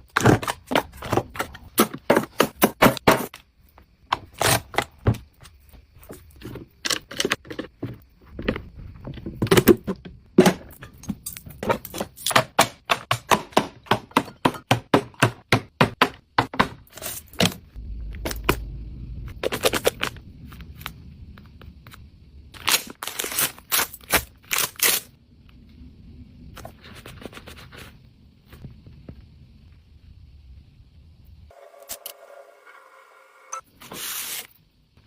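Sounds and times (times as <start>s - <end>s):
scraping and rustling packaging: 22.6s - 25.1s.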